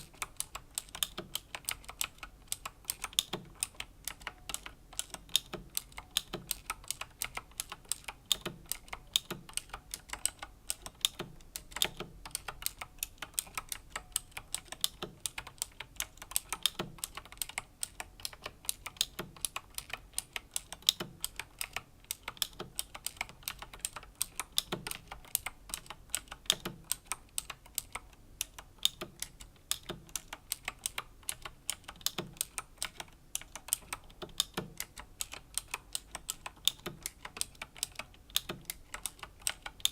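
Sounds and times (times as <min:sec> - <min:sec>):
mechanical keyboard key clicks: 0:00.0 - 0:39.9.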